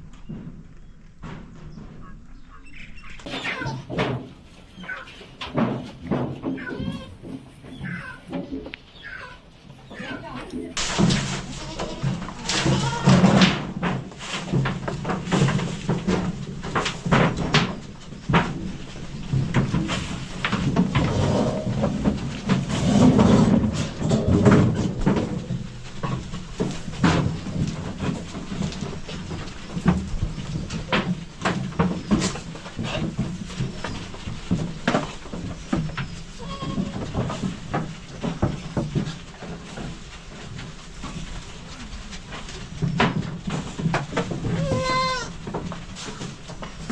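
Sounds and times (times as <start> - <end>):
goats bleating: 6.5 - 7.2, 11.4 - 13.4, 36.4 - 37.2, 44.5 - 45.4.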